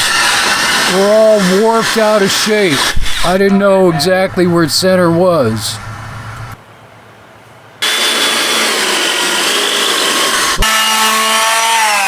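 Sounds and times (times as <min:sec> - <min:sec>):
power tool grinding wood: 0:00.0 - 0:06.6, 0:07.8 - 0:12.0
motor whine: 0:04.1 - 0:06.6.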